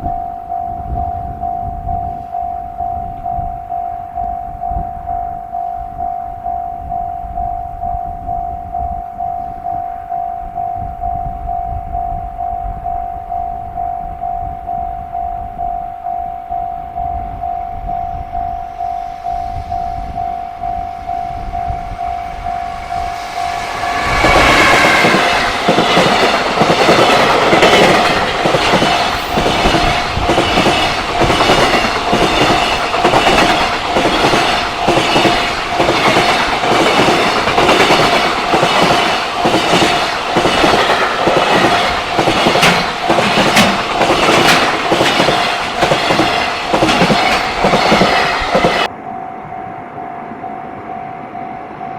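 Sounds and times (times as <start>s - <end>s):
train wheels clattering: 22.3s - 48.9s.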